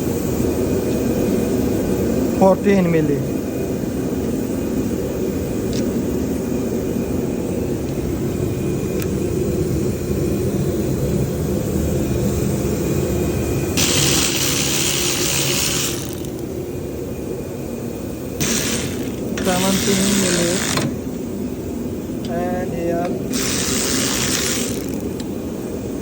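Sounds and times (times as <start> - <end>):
loud hiss: 13.8 - 16.4, 18.4 - 21.0, 23.3 - 25.1.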